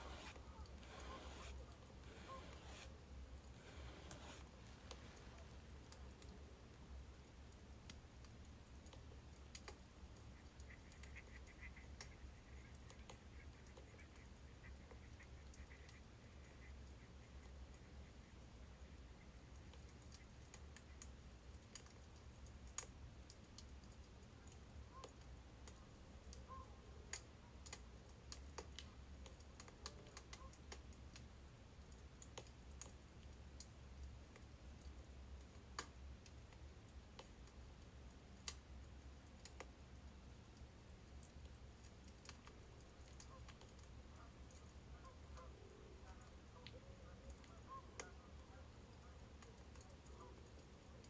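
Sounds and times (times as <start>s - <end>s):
firewood crackling: 0.0s - 11.1s, 27.1s - 47.5s.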